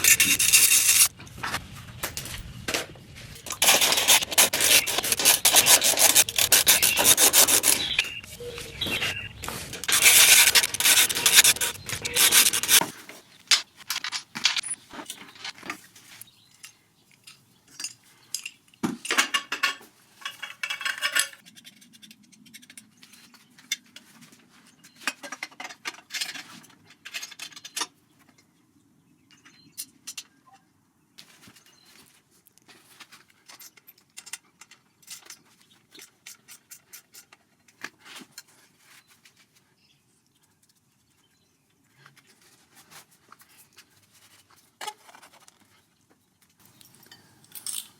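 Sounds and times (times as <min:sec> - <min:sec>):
metallic clicks and clinks: 0:00.0 - 0:01.1, 0:13.5 - 0:15.6, 0:46.6 - 0:47.9
scraping and rubbing: 0:00.0 - 0:02.4, 0:03.2 - 0:16.2.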